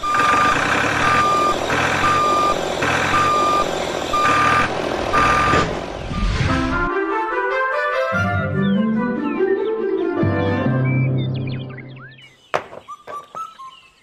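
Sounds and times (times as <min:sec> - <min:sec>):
vehicle reversing alarm beeping: 0:00.0 - 0:06.8.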